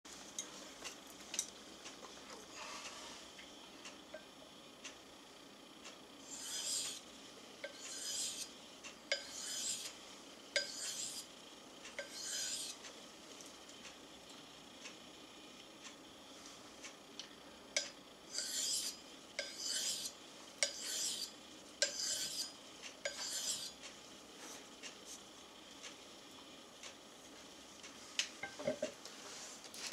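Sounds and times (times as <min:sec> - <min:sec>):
knife scraping on sharpening stone: 0:06.2 - 0:07.0, 0:07.6 - 0:08.5, 0:09.1 - 0:09.9, 0:10.6 - 0:11.3, 0:12.0 - 0:12.8, 0:18.3 - 0:23.8.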